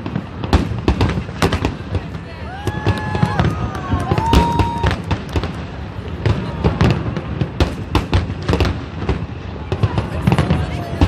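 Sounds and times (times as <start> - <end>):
fireworks bursting: 0.0 - 11.0.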